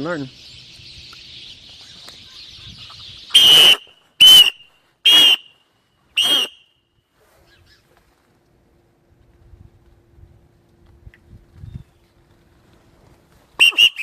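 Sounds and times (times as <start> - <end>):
sparrows chattering: 0.0 - 3.8
shrill whistle blasts: 3.3 - 5.5, 6.2 - 6.8, 13.6 - 14.0.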